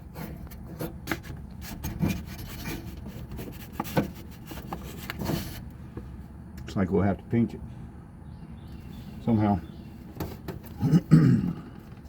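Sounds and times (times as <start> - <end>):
rubbing and scraping on plastic: 0.0 - 5.7.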